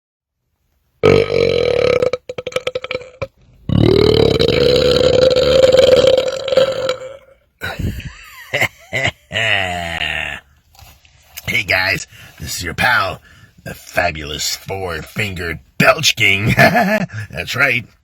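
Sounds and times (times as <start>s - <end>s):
vocal croaks: 1.0s - 7.4s
man belching: 1.0s - 7.9s, 9.0s - 10.5s.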